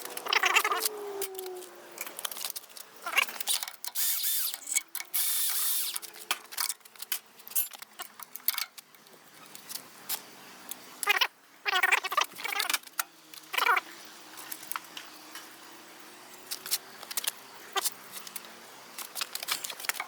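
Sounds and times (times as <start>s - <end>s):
metal tools clinking: 0.0s - 8.8s.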